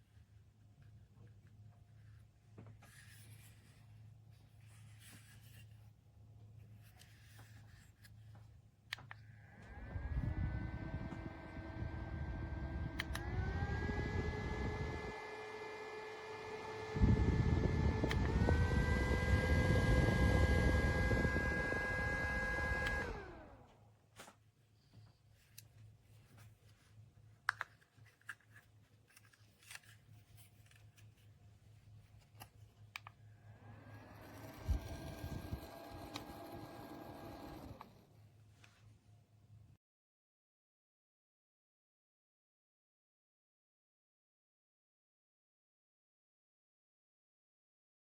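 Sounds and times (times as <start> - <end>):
rustling and scraping handling: 0.0 - 8.7, 23.3 - 33.3
handheld fan motor whining: 9.4 - 23.8, 33.4 - 38.2.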